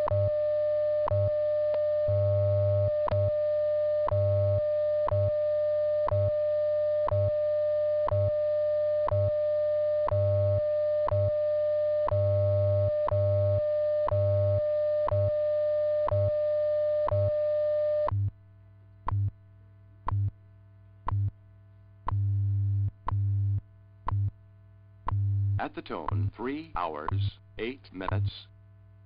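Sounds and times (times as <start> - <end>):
low pulsing time-code hum: 0.0 - 29.0
steady radio tone: 25.6 - 28.5.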